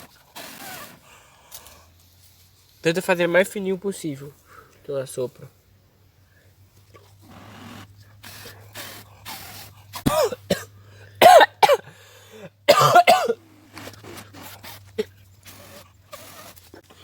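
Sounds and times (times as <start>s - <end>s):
breathy puffs of blowing: 0.0s - 2.1s, 6.2s - 11.2s, 11.8s - 12.6s
person coughing hard: 10.0s - 11.9s, 12.7s - 13.4s.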